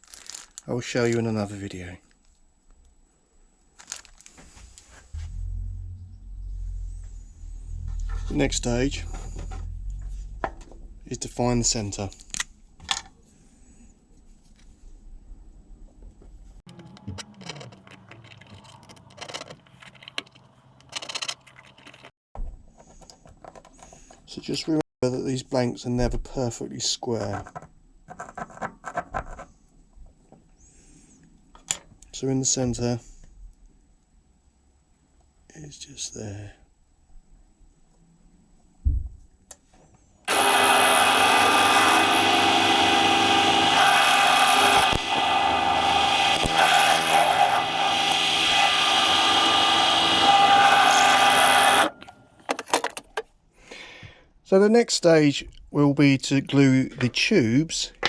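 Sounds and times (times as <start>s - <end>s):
steady low hum: 5.1s - 11.2s
low thump: 5.2s - 11.0s
power drill running: 16.7s - 22.1s, 40.3s - 52.2s.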